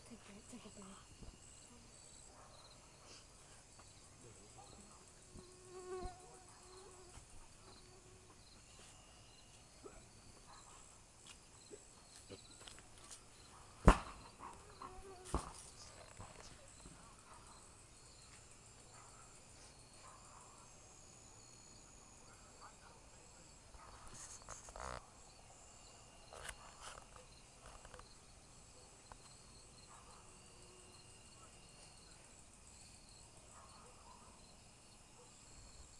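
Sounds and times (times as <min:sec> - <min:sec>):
insects chirping: 0:00.0 - 0:35.9
sharp knock: 0:13.8 - 0:14.3.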